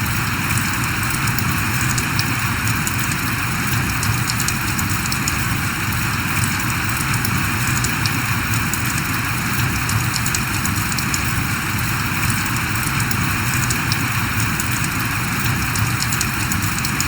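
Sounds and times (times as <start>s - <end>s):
raindrop ticks: 0.0s - 17.0s
steady rain hiss: 0.0s - 17.0s.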